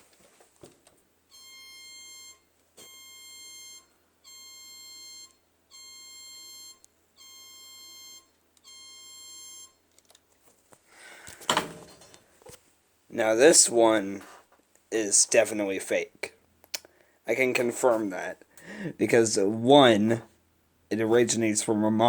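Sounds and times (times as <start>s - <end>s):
buzzy alarm tone blasts: 1.3s - 9.8s.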